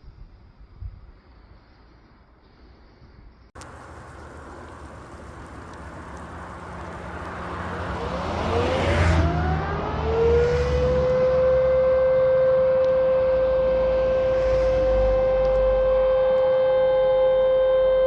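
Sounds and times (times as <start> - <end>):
siren rising to a steady tone: 4.7 - 18.0.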